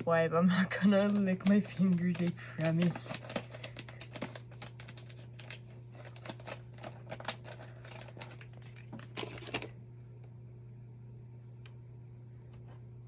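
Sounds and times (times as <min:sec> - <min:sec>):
plastic packet crinkling: 0:00.6 - 0:09.7.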